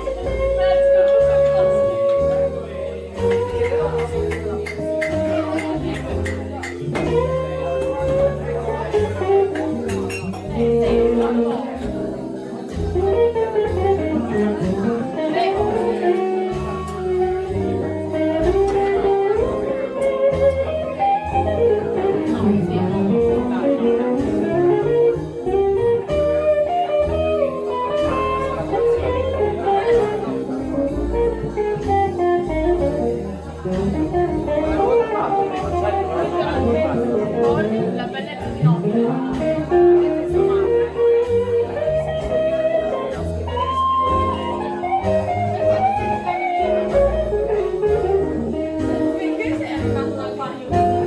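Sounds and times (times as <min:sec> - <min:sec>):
electric guitar lead line: 0:00.0 - 0:51.0
live band playing slow blues: 0:00.0 - 0:51.0.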